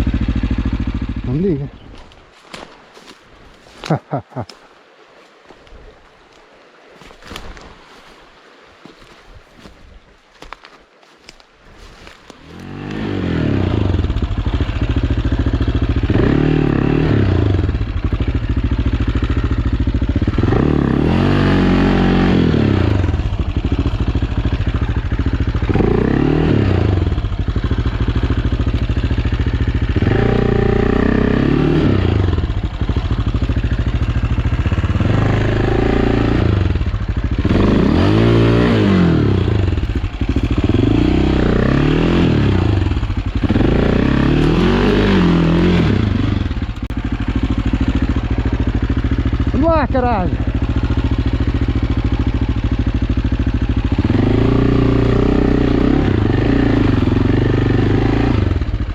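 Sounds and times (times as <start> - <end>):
motorcycle engine revving: 0.0 - 4.0, 11.0 - 58.9
engine clatter: 12.5 - 58.9.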